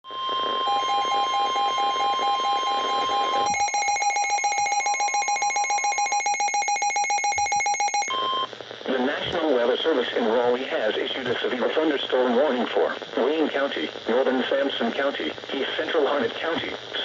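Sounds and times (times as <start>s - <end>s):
dense multi-tone beeping: 0.1s - 8.5s
steady high alert tone: 0.7s - 8.5s
rapid alert beeping: 3.5s - 8.2s.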